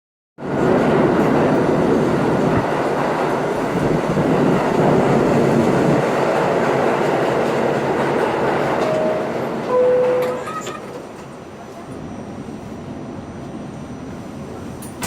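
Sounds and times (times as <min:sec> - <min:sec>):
subway train rumble and rattle: 0:00.4 - 0:15.0
two-tone door chime: 0:08.8 - 0:10.8.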